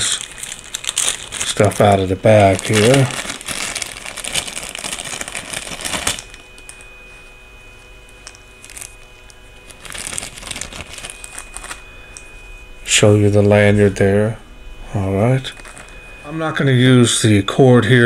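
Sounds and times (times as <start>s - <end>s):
plastic bag crinkling: 0.0s - 6.8s, 8.1s - 11.8s, 15.5s - 16.0s.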